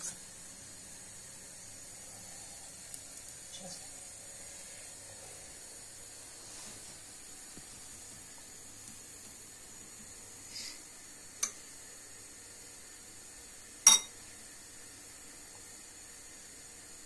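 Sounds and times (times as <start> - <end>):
faint steady hiss: 0.0 - 17.0
utensils clinking against dishes: 13.9 - 14.1.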